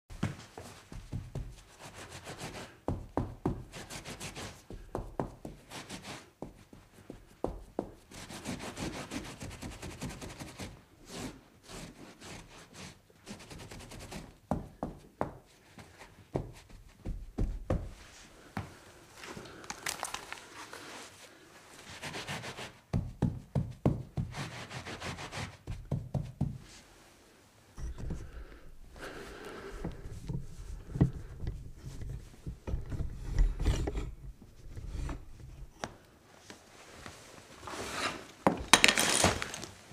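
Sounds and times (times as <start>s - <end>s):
knocks taps and scrapes: 0.1s - 10.6s, 27.8s - 39.7s
rubbing and wiping: 0.3s - 14.4s, 20.4s - 23.1s, 24.0s - 27.2s, 27.8s - 35.7s.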